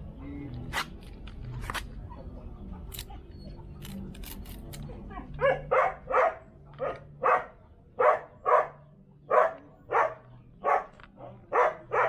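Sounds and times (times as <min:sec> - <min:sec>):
dog barking: 0:05.4 - 0:12.0.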